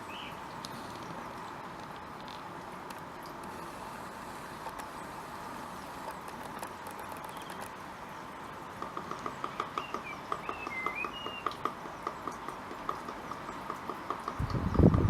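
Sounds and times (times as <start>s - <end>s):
bird beak tapping on wood: 8.8s - 15.0s
whistled bird call: 9.8s - 11.6s.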